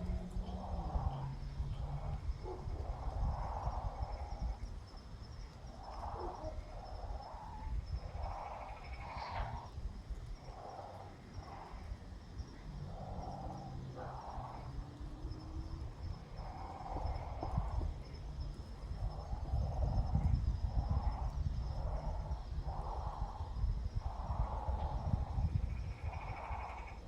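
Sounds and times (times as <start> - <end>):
high insect trill: 0.0 - 27.0
low background rumble: 0.0 - 27.0
nestling birds raspy calls: 5.5 - 18.3.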